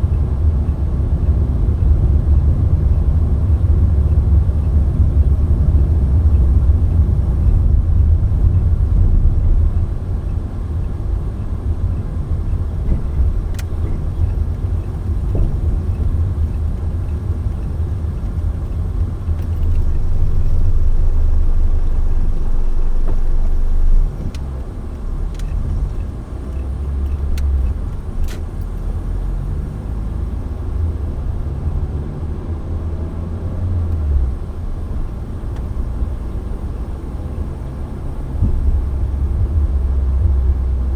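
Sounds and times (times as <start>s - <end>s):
car engine and tyres rumbling: 0.0s - 40.9s
faint clicks: 24.2s - 28.9s.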